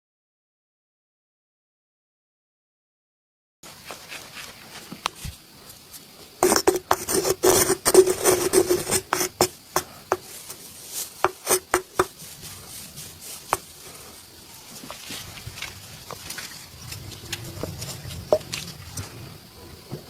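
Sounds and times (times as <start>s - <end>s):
hands rubbing briskly: 3.8s - 19.4s
scattered taps: 11.2s - 12.2s.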